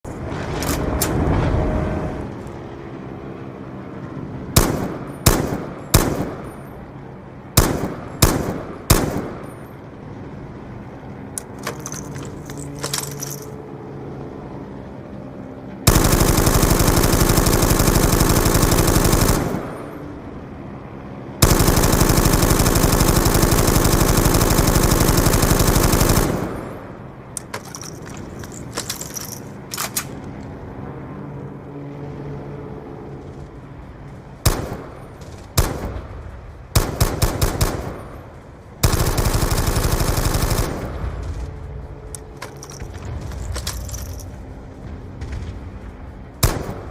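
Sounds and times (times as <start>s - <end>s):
machine gun firing: 4.6s - 6.6s, 7.6s - 9.6s, 15.9s - 20.1s, 21.4s - 29.4s, 34.4s - 36.0s, 36.7s - 41.4s, 46.4s - 46.9s
mechanical clicks and clatter: 11.3s - 13.6s, 21.4s - 30.5s, 38.8s - 44.6s.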